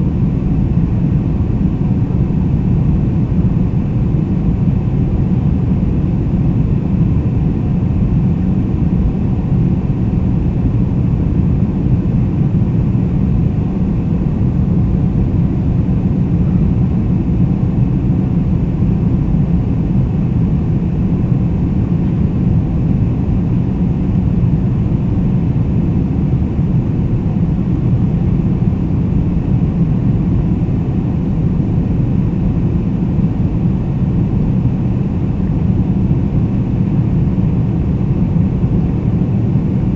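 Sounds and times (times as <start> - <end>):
jet engines deep rumble: 0.0 - 39.9.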